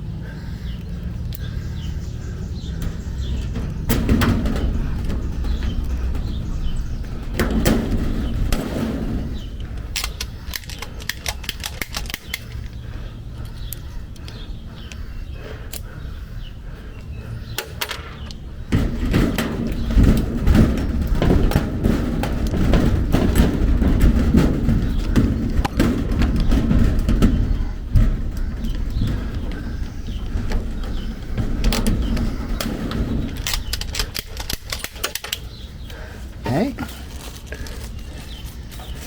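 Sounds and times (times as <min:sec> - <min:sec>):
low rumble: 0:00.0 - 0:17.5
rivet gun clicking and snapping: 0:09.8 - 0:12.8, 0:33.3 - 0:35.6.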